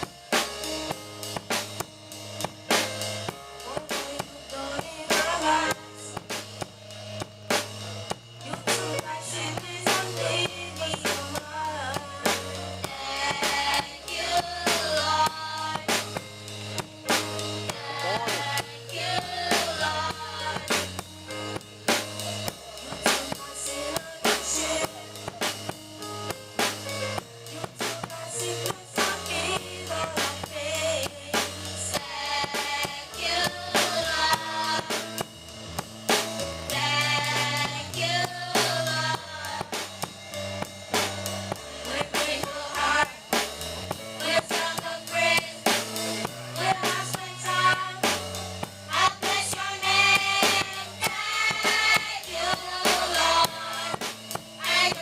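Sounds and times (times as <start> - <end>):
bass notes: 0.0 - 55.0
drum kit beat: 0.0 - 55.0
voices singing: 3.6 - 6.3, 8.0 - 25.8, 27.4 - 35.4, 36.6 - 39.9, 41.7 - 55.0
person singing: 8.5 - 15.9, 17.7 - 20.9.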